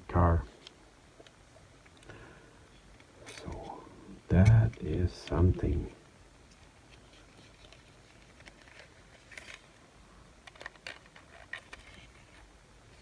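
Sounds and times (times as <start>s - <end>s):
small clicks and light scraping: 0.6s - 3.8s, 6.4s - 9.8s, 10.4s - 13.0s.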